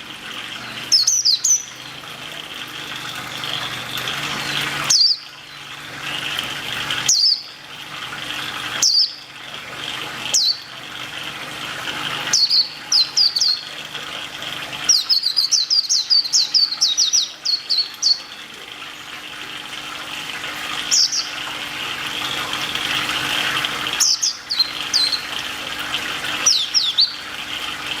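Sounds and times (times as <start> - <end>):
bird chirping: 0.6 - 1.9, 8.8 - 9.2, 12.3 - 13.7, 14.9 - 18.4, 20.9 - 21.4, 24.0 - 25.4, 26.4 - 27.2.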